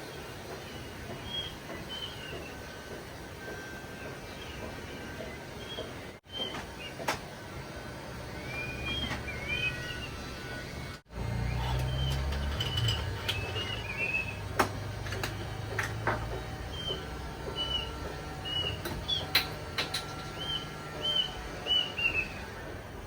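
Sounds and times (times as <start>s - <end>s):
bird chirping: 4.0s - 7.0s, 8.4s - 10.2s, 11.4s - 14.5s, 16.7s - 22.4s.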